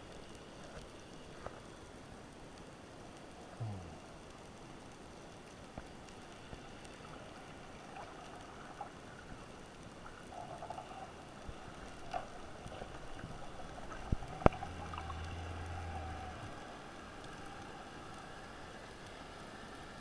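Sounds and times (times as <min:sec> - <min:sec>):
small ticks: 0:00.0 - 0:19.9
faint underwater hiss: 0:00.0 - 0:20.0
sharp underwater clicks: 0:09.4 - 0:18.4
low hum: 0:11.5 - 0:19.2.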